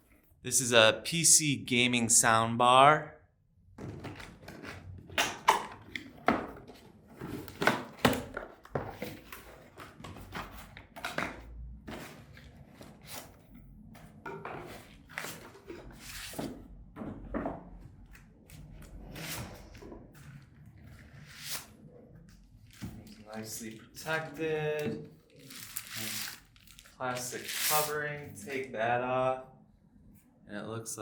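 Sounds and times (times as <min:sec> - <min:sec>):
cardboard packaging handled: 0:25.3 - 0:27.8.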